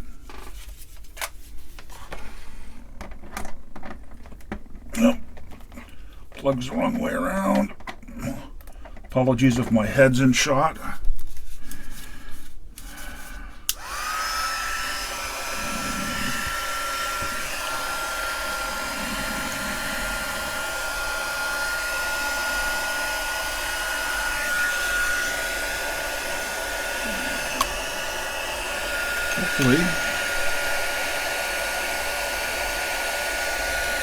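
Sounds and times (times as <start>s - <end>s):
hot-air gun fan whine: 13.7s - 34.0s.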